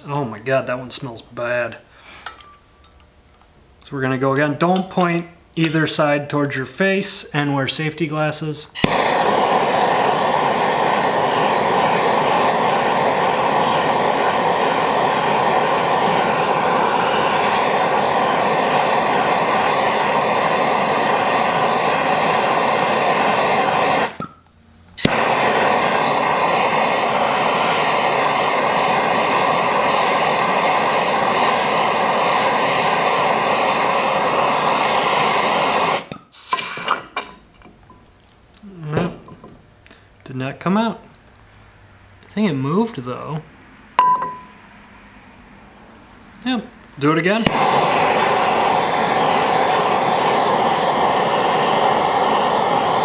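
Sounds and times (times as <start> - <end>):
gas torch hissing: 8.6 - 37.7, 47.0 - 53.0.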